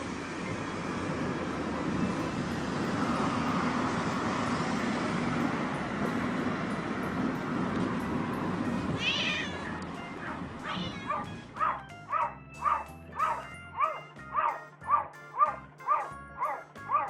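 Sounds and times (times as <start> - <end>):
steady rushing noise: 0.0 - 11.6
music with meow-like call: 8.9 - 17.0
cat meowing: 9.0 - 9.7, 10.6 - 13.4.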